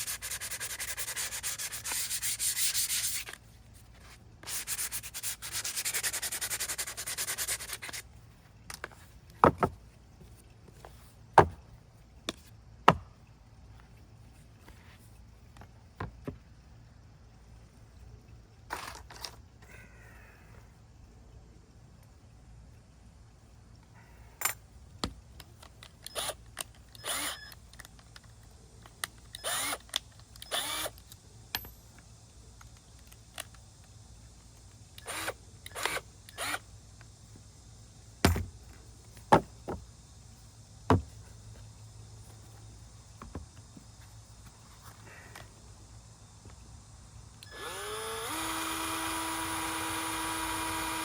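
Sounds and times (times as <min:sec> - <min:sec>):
screw gun driving screws: 0:29.4 - 0:31.1, 0:35.0 - 0:36.6
sharp knocks: 0:38.2 - 0:38.6.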